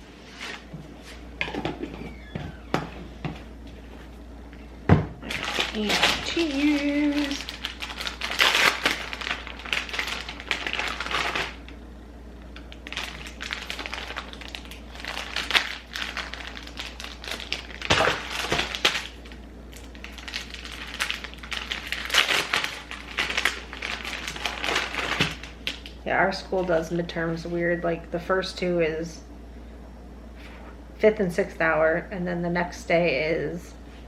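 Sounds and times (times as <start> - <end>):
crinkling and rustling: 5.2 - 11.7, 12.7 - 26.0.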